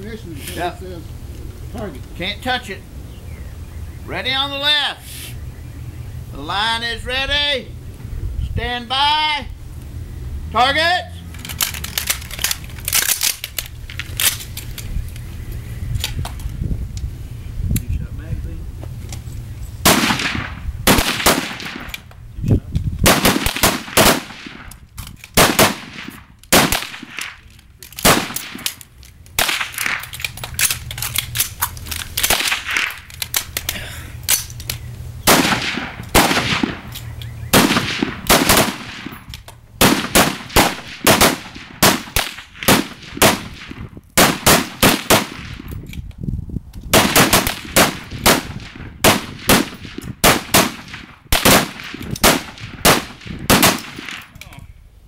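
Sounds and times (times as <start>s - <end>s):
rifle shots: 19.8s - 22.0s, 23.0s - 24.7s, 25.4s - 28.8s, 29.4s - 30.8s, 32.2s - 33.1s, 35.2s - 36.9s, 37.5s - 45.7s, 46.9s - 54.3s.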